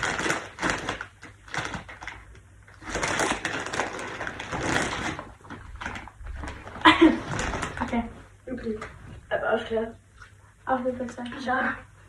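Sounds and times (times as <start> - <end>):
snack wrapper crinkling: 0.0 - 8.0.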